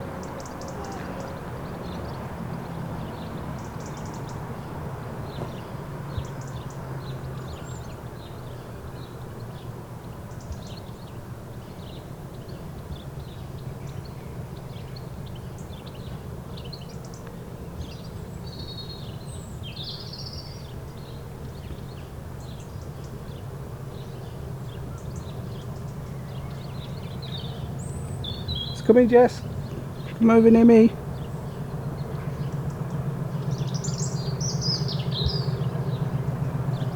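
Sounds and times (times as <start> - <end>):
low background rumble: 23.6 - 36.9
birds chirping and trilling: 24.0 - 36.9.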